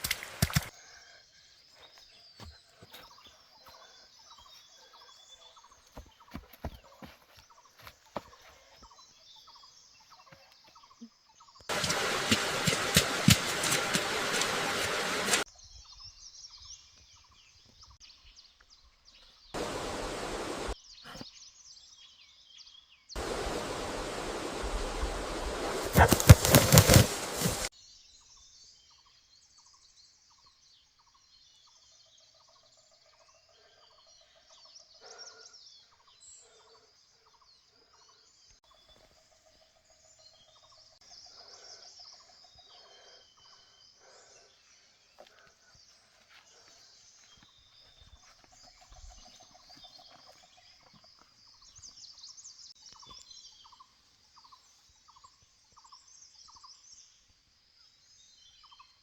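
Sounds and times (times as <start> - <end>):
faint bird calls: 0.0 - 18.0, 19.2 - 21.3, 23.2 - 27.7.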